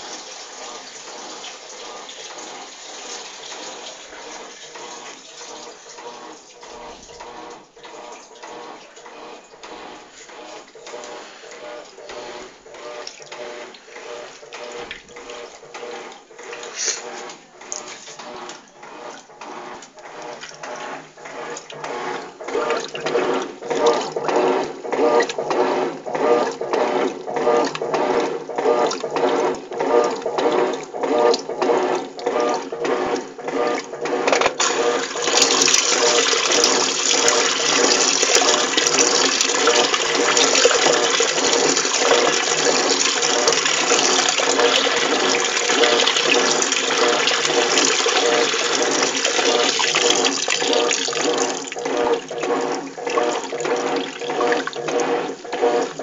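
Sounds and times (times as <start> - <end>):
washing machine water sloshing: 0.0 - 56.0.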